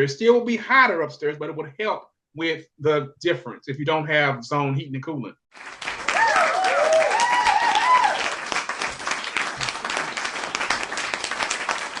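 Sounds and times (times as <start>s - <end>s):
audience applauding: 5.6s - 12.0s
person cheering: 6.0s - 8.5s.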